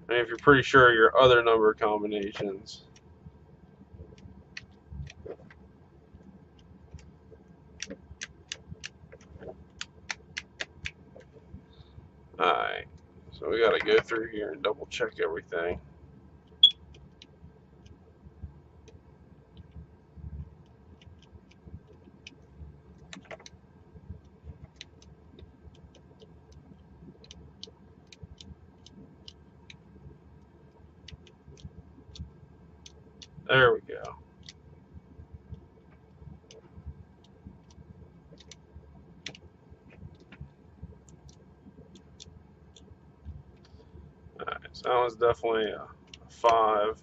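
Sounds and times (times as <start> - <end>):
low handling noise: 0.0 - 15.8.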